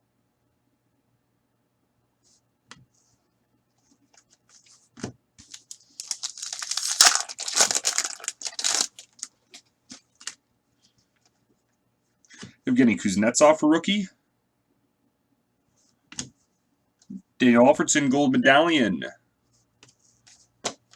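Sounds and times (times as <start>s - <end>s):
wrapper tearing and crinkling: 5.5s - 9.3s.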